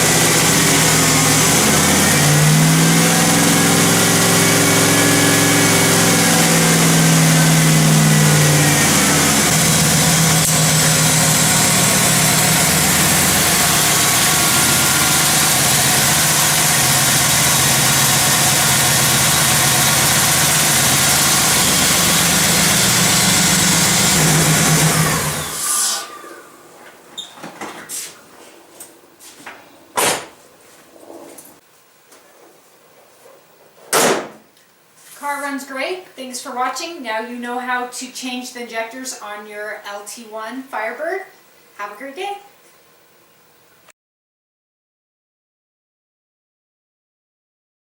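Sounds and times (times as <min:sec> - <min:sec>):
engine running steadily: 0:00.0 - 0:25.6
loud knock: 0:30.0 - 0:30.3, 0:33.9 - 0:34.4.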